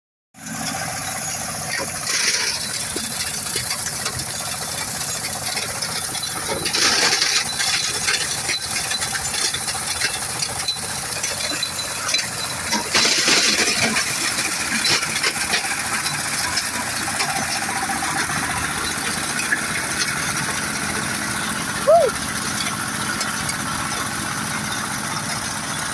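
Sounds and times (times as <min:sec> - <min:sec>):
stone-crushing machine rattling: 0:00.7 - 0:25.9.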